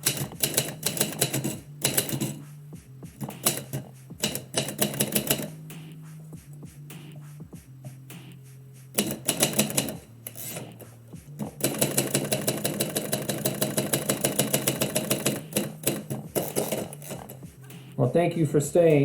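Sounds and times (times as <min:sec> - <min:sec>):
typewriter keys striking: 0:00.0 - 0:02.4, 0:03.2 - 0:05.5, 0:09.0 - 0:17.5.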